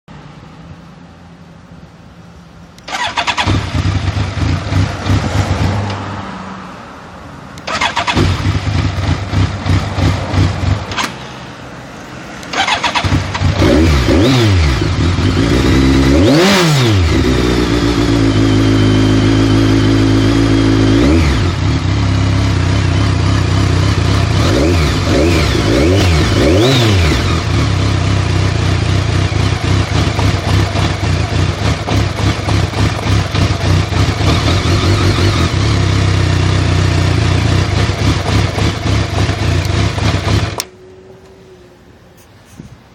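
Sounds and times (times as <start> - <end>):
motorcycle engine cranking: 2.8 - 6.0, 7.6 - 11.2, 12.4 - 21.4
motorcycle engine running unevenly: 27.2 - 41.2.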